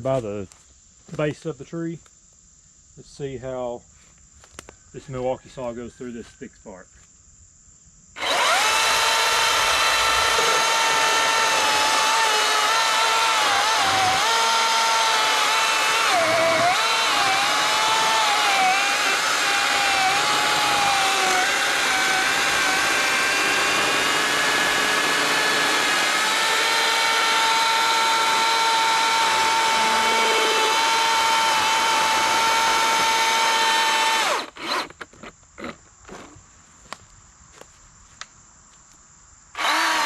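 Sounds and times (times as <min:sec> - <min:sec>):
chainsaw cutting tree trunk: 0:08.2 - 0:35.0, 0:39.6 - 0:40.0.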